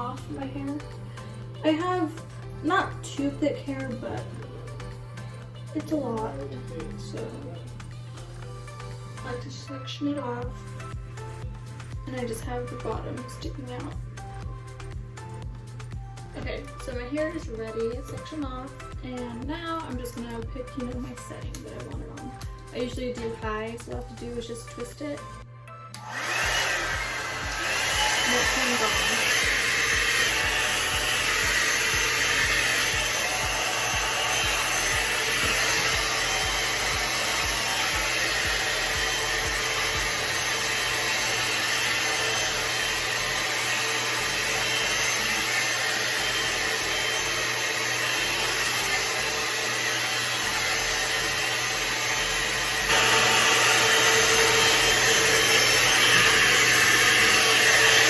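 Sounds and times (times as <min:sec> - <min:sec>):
hair dryer brush blowing: 0:26.0 - 0:58.0.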